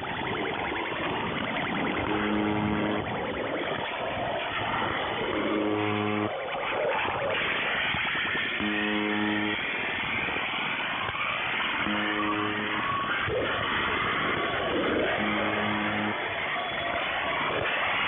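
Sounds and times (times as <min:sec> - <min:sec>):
harsh noise music over radio: 0:00.0 - 0:18.0
low buzzing chord: 0:02.0 - 0:03.1, 0:05.3 - 0:06.3, 0:08.6 - 0:09.6, 0:11.8 - 0:12.8, 0:15.0 - 0:16.2.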